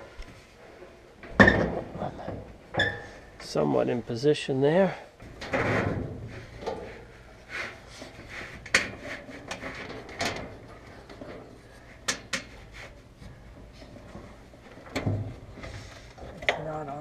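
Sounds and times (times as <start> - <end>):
dryer drum scraping: 5.3 - 17.0.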